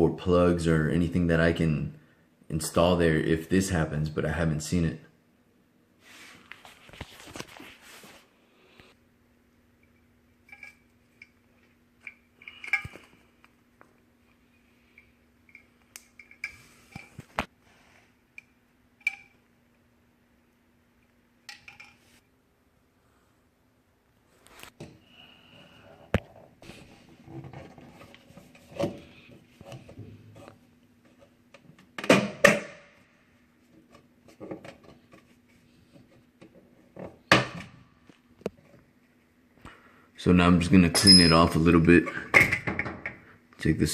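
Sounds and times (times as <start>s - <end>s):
tools clicking and tapping: 15.0s - 17.2s.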